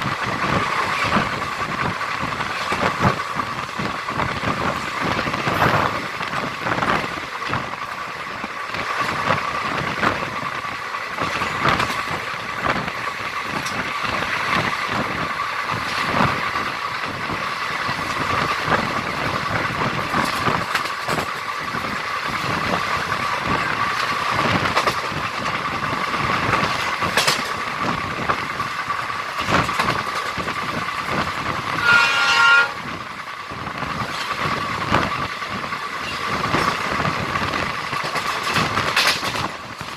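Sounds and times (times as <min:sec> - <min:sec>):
train running noise: 0:00.0 - 0:39.9
wheels clicking over rail joints: 0:00.0 - 0:39.9
train horn blast: 0:31.7 - 0:33.0.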